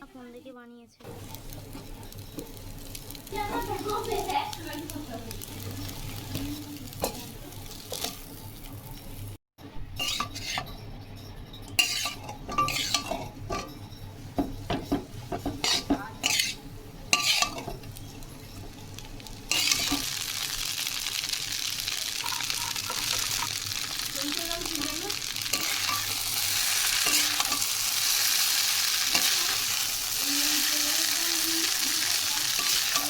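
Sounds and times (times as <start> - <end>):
food sizzling in hot oil: 1.0 - 11.0, 11.6 - 33.0
utensil scraping and clinking pan: 9.9 - 20.2, 25.4 - 31.1, 31.7 - 33.0.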